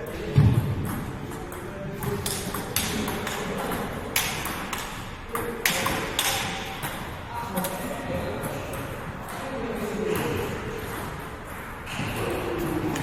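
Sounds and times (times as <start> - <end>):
table tennis ball hits: 0.3 - 7.8.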